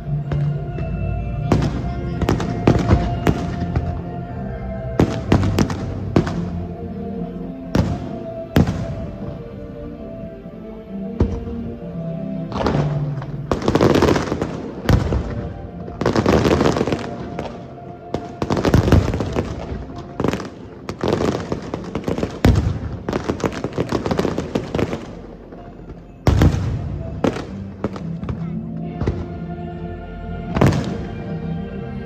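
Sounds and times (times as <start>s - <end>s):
music playing: 0.0s - 32.0s
firework crackling: 5.0s - 6.7s, 12.6s - 25.4s
firework shells booming: 18.2s - 25.2s.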